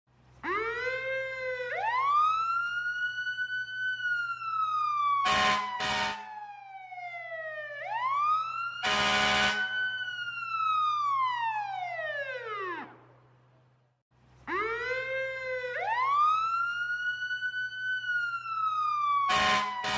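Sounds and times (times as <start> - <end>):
fire truck siren wailing: 0.4 - 13.6, 14.5 - 19.9
horn blasts: 5.2 - 6.3, 8.8 - 9.8, 19.3 - 19.9.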